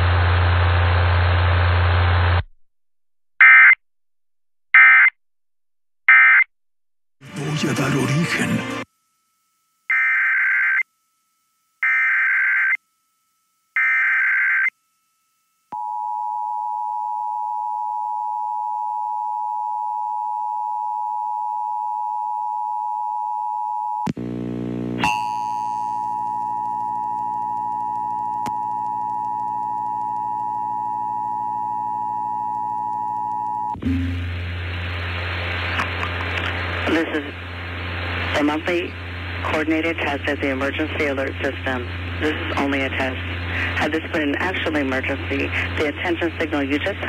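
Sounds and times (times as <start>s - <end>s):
warbling modem data bursts: 9.9s - 10.8s
click and buzz: 24.0s - 30.3s
steady attention signal tone: 25.0s - 34.3s.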